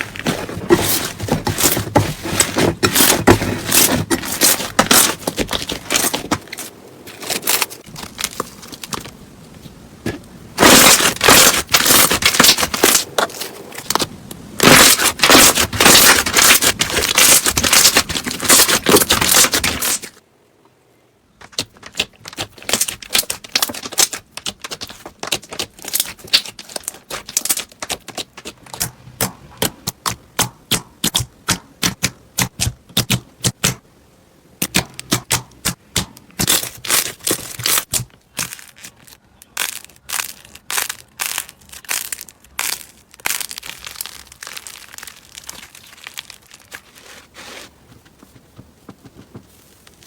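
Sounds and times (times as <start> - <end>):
slime crunchy crackling: 0.0 - 9.2, 10.6 - 20.1, 21.5 - 28.9, 36.3 - 47.7.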